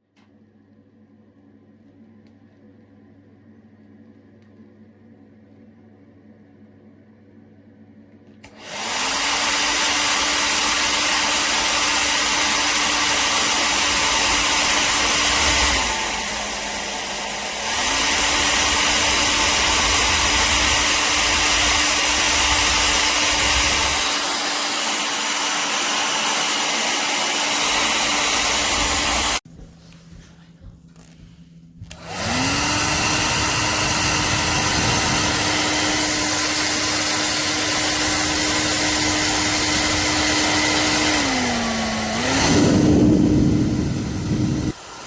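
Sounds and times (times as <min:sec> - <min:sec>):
hair dryer blowing: 0:08.4 - 0:29.4, 0:31.8 - 0:45.0.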